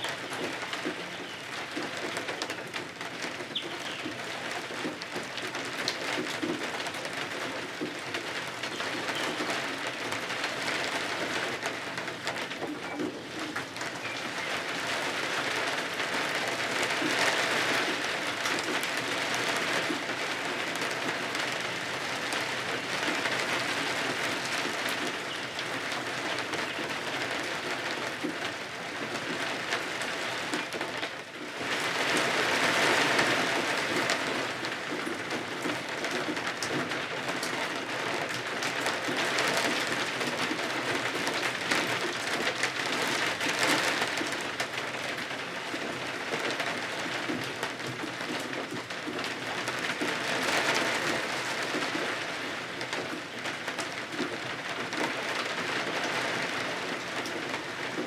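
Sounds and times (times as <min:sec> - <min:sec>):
heavy rain falling: 0:00.0 - 0:58.0.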